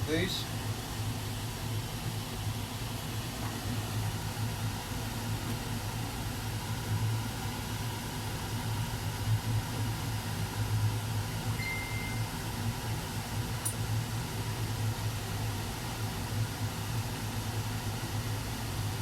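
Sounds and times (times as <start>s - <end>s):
low mechanical hum: 0.0s - 19.0s
short high beep: 11.6s - 12.3s.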